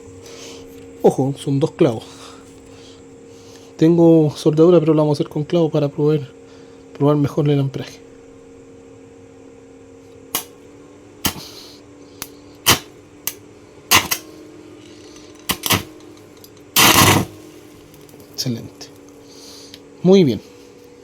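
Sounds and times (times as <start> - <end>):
welder machine hum: 0.0 - 21.0
welding arc crackling: 10.3 - 10.6, 11.2 - 19.8.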